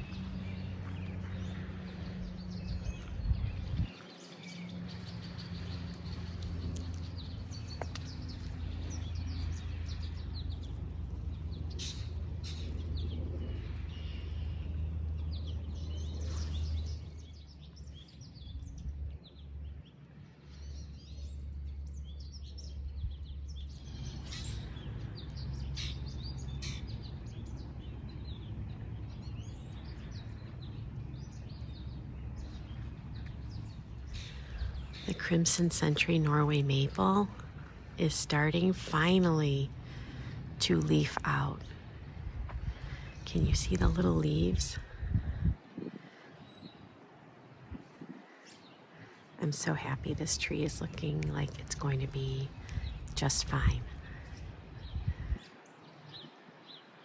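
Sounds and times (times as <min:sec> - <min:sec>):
low rumble: 0:00.0 - 0:48.1
songbirds chirping and singing: 0:00.0 - 0:57.0.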